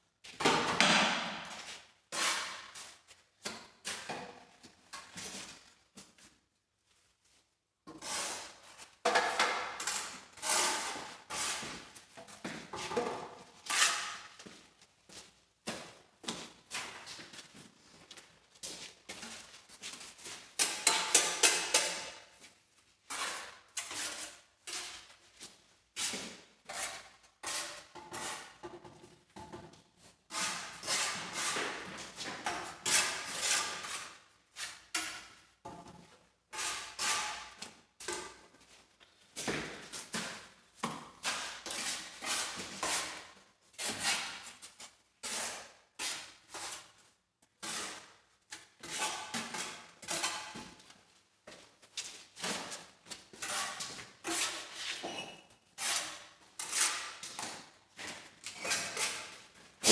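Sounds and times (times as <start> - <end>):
hand tools knocking and scraping: 20.6 - 22.2.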